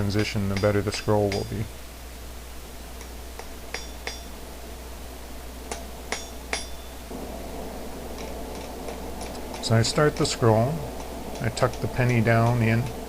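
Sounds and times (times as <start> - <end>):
hammer ringing on steel anvil: 0.2 - 1.7, 3.0 - 4.4, 5.7 - 7.0.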